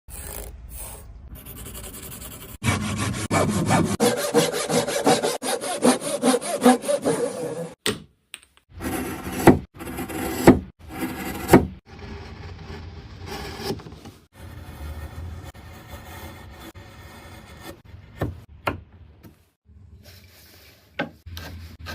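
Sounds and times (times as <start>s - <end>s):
hand saw cutting wood: 2.6s - 7.8s, 8.8s - 13.8s.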